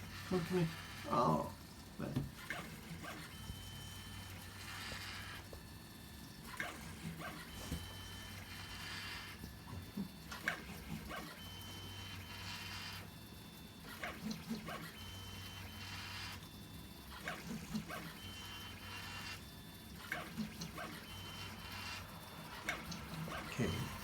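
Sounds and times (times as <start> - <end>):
stepper motors whining: 17.1 - 24.0.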